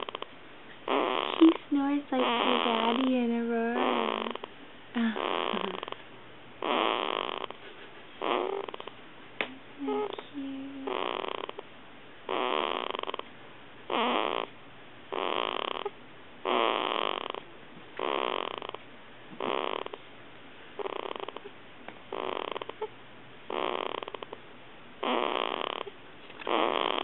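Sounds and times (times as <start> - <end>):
small squeaks: 0.0 - 1.6, 2.2 - 3.2, 3.8 - 4.5, 8.2 - 8.9, 9.9 - 10.3, 25.0 - 27.0
baby snoring: 0.0 - 6.0, 6.6 - 7.6, 8.2 - 8.9, 9.8 - 11.6, 12.3 - 13.3, 13.9 - 14.5, 15.1 - 17.4, 18.0 - 18.8, 19.4 - 20.0, 20.8 - 21.5, 22.1 - 22.9, 23.5 - 24.4, 25.0 - 27.0.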